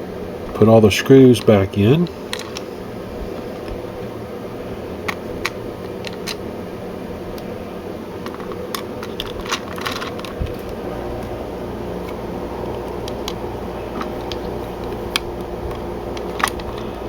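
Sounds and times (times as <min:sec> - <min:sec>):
steady low hum: 0:00.0 - 0:17.0
screwdriver clicking on plastic case: 0:12.8 - 0:16.9.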